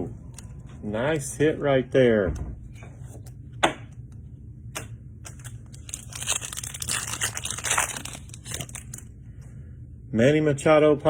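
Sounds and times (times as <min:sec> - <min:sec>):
foil wrapper crinkling and tearing: 0:05.3 - 0:09.1.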